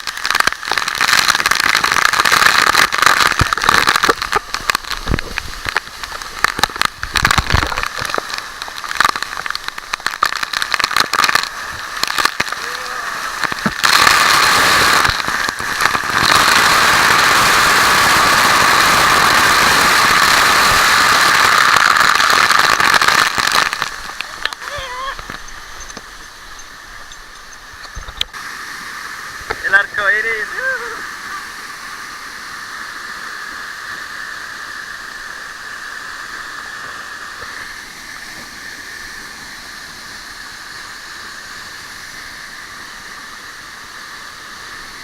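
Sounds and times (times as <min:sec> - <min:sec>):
crackling and clicks: 0:00.0 - 0:16.8, 0:21.2 - 0:28.4
waterfall rushing: 0:00.0 - 0:45.0.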